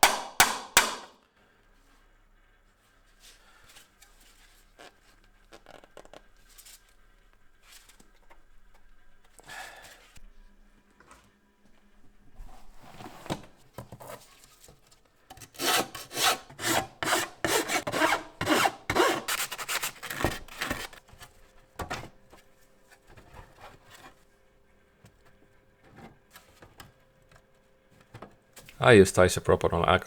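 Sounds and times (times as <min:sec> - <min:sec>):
hand sanding plastic: 0:15.6 - 0:21.0.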